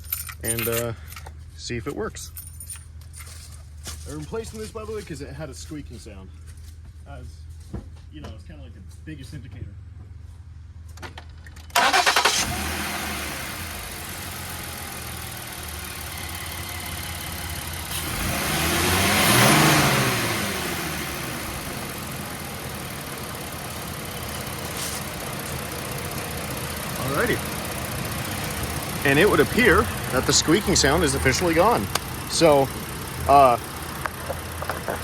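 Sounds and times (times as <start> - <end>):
car engine cranking and running: 0.0 - 6.2, 10.8 - 35.0.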